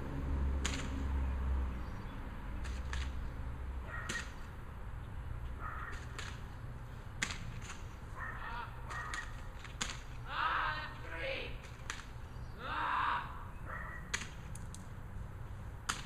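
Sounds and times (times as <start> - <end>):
airsoft gun shots: 4.0 - 4.5, 8.9 - 10.1.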